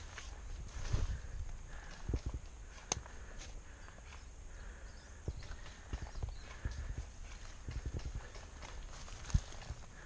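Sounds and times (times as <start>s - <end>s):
footsteps on ground: 0.0s - 10.0s.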